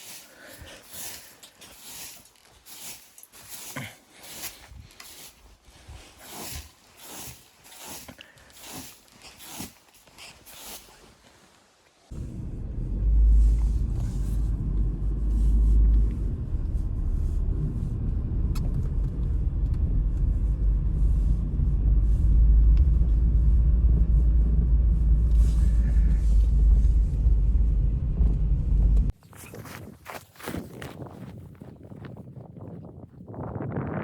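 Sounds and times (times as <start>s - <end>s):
wind buffeting microphone: 12.1s - 34.0s.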